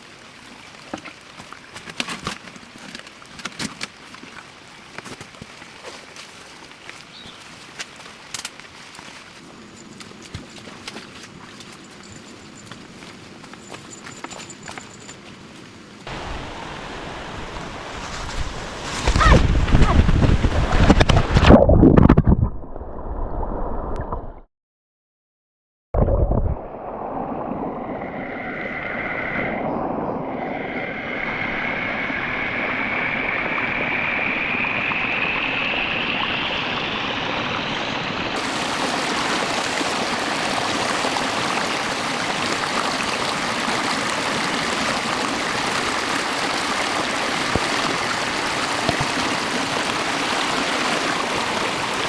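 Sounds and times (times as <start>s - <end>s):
stream water rushing: 0.0s - 19.2s, 31.1s - 52.0s.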